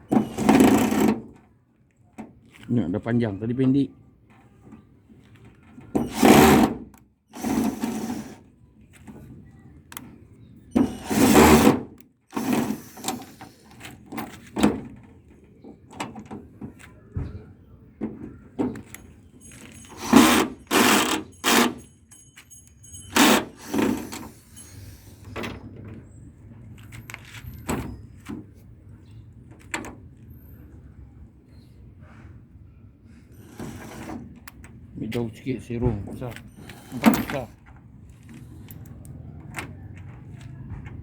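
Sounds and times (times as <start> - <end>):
handling clicks and knocks: 13.0 - 30.4, 33.8 - 41.0
small motorised hand tool: 19.9 - 21.8.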